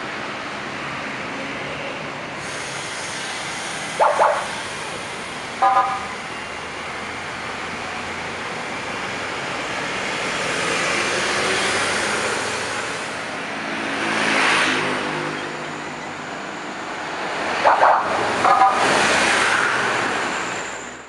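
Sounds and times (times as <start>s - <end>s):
road traffic noise: 0.0s - 21.0s
vehicle passing close: 9.8s - 15.6s.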